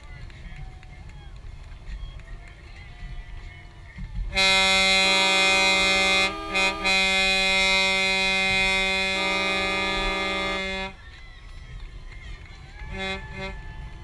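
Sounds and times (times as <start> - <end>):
loud chord horn blast: 4.3 - 11.0
second horn: 4.3 - 11.0, 12.8 - 13.8.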